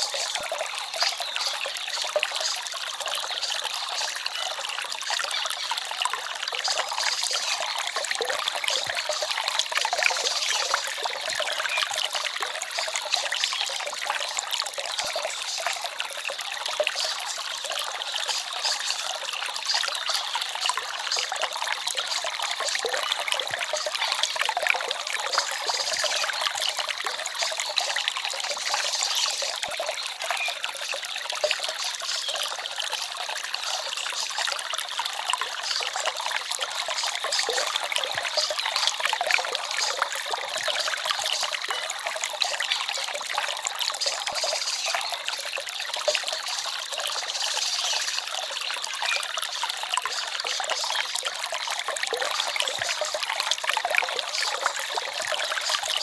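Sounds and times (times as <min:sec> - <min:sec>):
stream trickling and babbling: 0:00.0 - 0:56.0.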